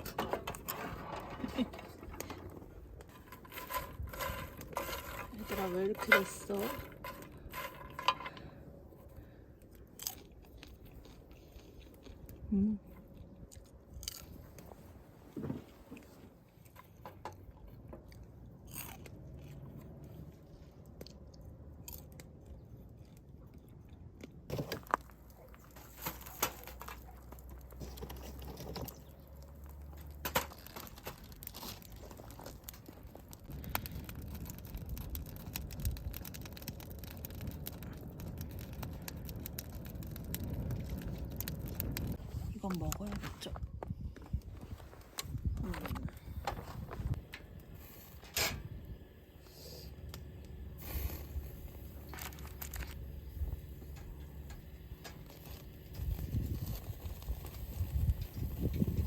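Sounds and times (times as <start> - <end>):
person chewing food: 9.5 - 14.8, 16.0 - 25.8.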